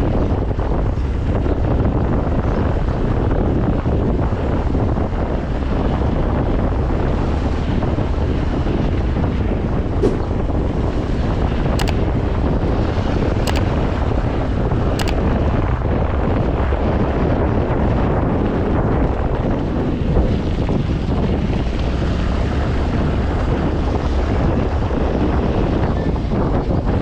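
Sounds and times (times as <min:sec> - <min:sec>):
scooter engine and road noise: 0:00.0 - 0:12.8, 0:13.4 - 0:15.2
wind buffeting microphone: 0:00.0 - 0:27.0
short sharp ticks: 0:11.8 - 0:12.0, 0:13.5 - 0:13.7, 0:15.0 - 0:15.2.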